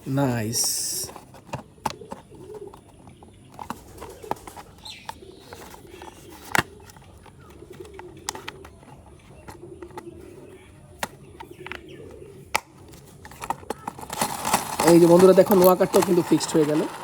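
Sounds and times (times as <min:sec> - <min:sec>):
pigeon cooing: 0:01.7 - 0:16.1
plastic toy parts clicking: 0:03.6 - 0:10.0, 0:12.5 - 0:17.0.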